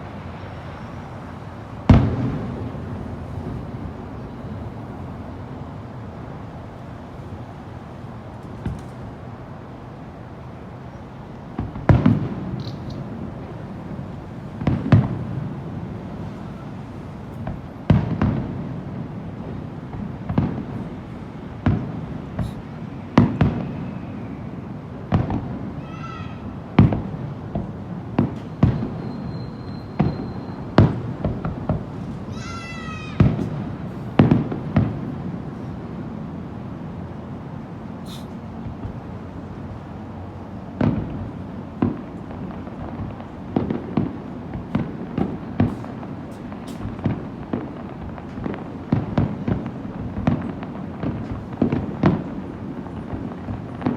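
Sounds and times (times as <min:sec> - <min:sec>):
low rolling echo: 0:00.0 - 0:29.6
fireworks bursting: 0:00.0 - 0:53.9
steady background noise: 0:00.0 - 0:53.9
fireworks shells bursting: 0:38.0 - 0:38.5.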